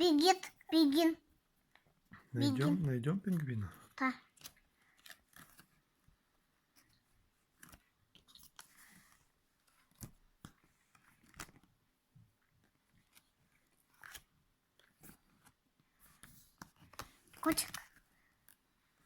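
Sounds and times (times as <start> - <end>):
book pages being turned: 2.4 - 19.0.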